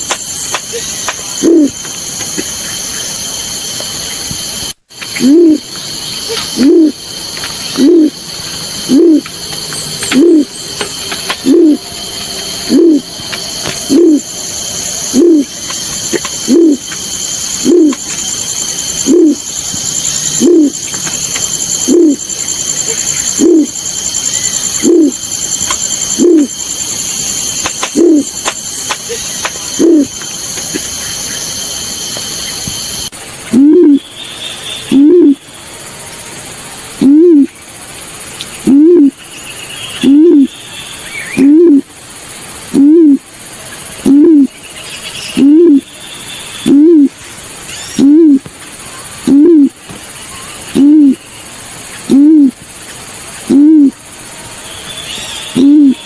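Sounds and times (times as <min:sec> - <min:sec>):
recorded bird call hooting: 0:00.0 - 0:56.0.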